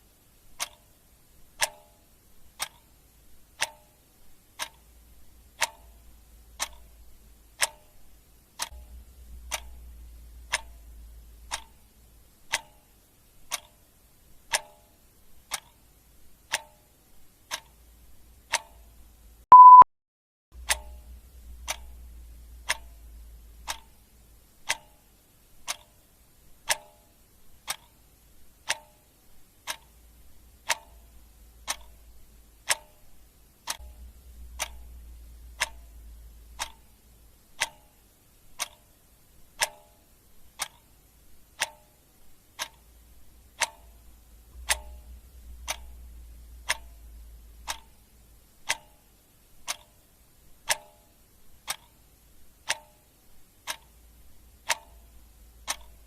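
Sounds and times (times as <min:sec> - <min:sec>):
clock ticking: 0:00.4 - 0:19.8, 0:20.6 - 0:56.0
short loud beep: 0:19.5 - 0:19.9.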